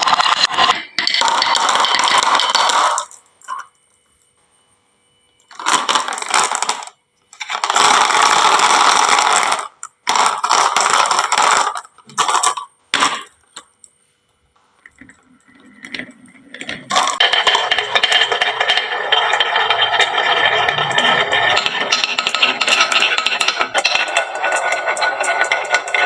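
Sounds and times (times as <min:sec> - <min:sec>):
marbles rolling on wood: 0:00.0 - 0:03.6, 0:05.5 - 0:12.6, 0:15.8 - 0:26.0.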